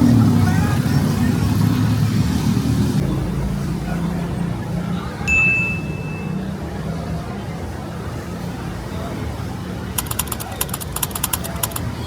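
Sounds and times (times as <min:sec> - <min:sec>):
city street traffic hum: 0:00.0 - 0:12.0
clear ding: 0:05.3 - 0:06.6.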